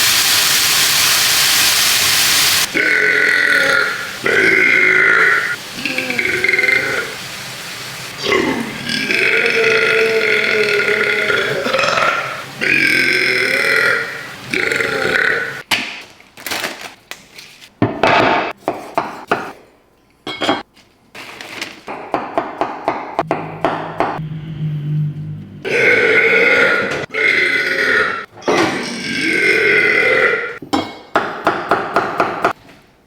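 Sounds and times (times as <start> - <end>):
person belching: 2.7 - 7.2, 8.2 - 15.6, 25.6 - 30.6.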